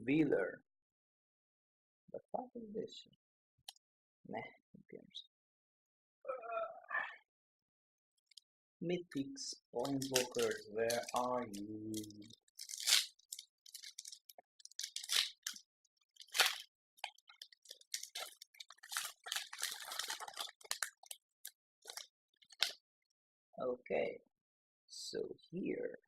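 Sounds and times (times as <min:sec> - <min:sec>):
plastic wrapper crinkling: 0:09.8 - 0:22.8.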